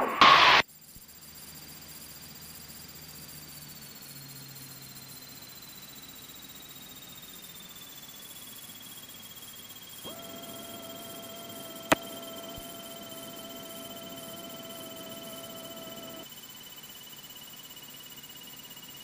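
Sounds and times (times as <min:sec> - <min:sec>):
sharp click: 0:10.1 - 0:16.2
steady beep tone: 0:10.1 - 0:16.2.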